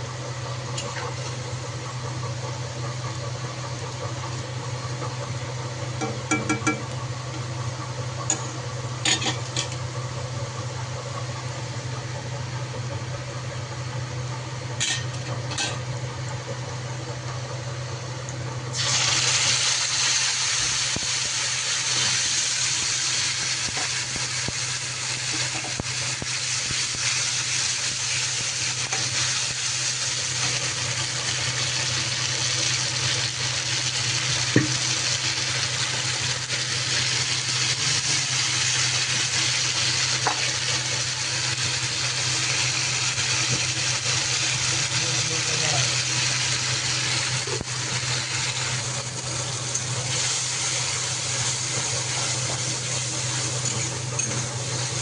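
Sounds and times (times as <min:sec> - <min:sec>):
food sizzling in hot oil: 0:18.7 - 0:55.0.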